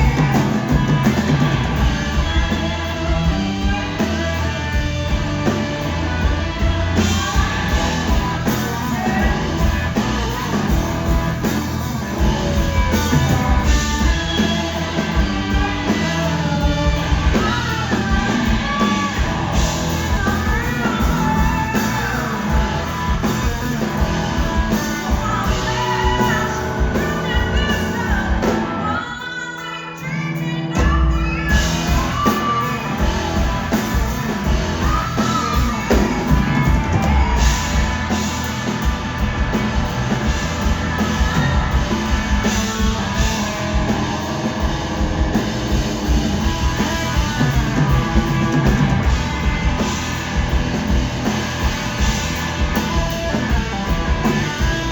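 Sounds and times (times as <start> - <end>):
person singing: 0.0 - 43.7
rock band playing live: 0.0 - 54.9.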